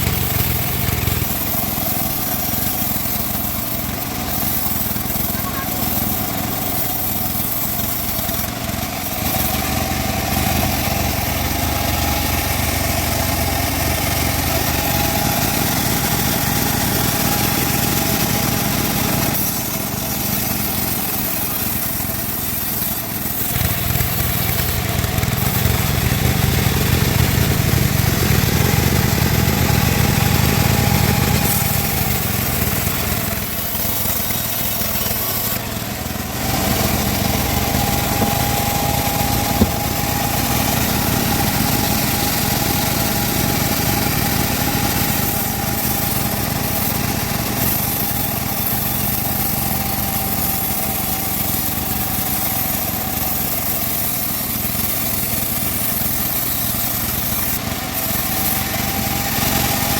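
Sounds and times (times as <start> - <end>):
band saw whine: 0.0 - 59.9
low engine rumble: 23.6 - 45.9.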